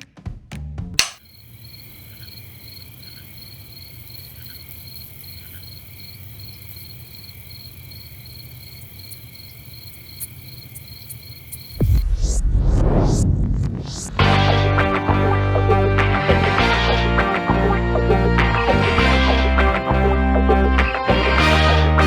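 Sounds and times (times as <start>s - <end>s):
crickets chirping: 1.1s - 12.0s.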